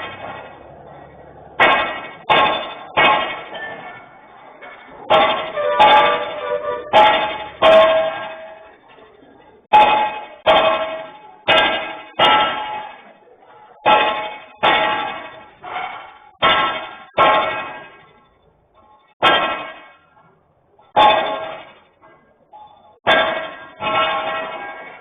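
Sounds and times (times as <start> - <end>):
hammer clanging on metal: 1.6 - 8.8.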